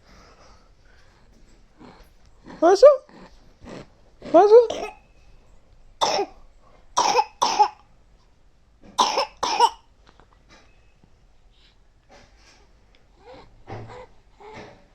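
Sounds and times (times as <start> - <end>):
child coughing: 4.3 - 5.0, 6.0 - 6.4, 7.0 - 7.8, 9.0 - 9.8.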